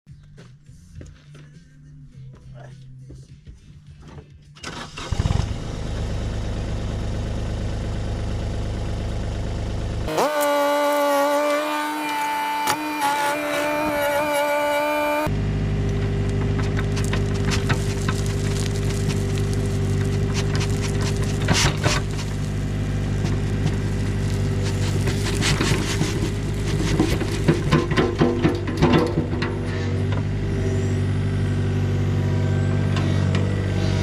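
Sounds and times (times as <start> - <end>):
diesel engine running: 4.6 - 34.0
metallic clanks and knocks: 26.9 - 30.3.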